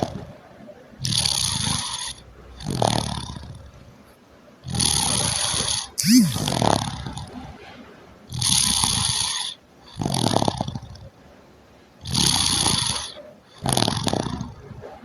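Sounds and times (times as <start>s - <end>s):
person snoring: 6.0s - 6.5s.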